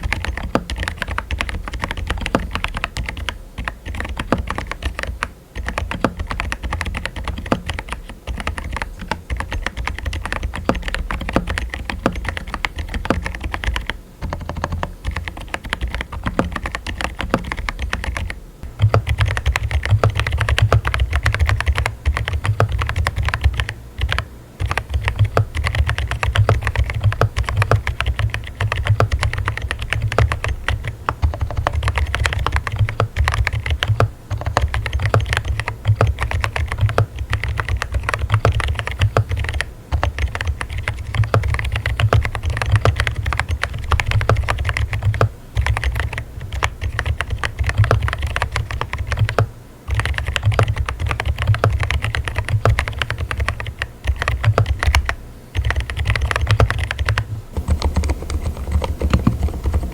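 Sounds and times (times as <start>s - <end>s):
fast typing on mechanical keyboard: 0.0s - 59.9s.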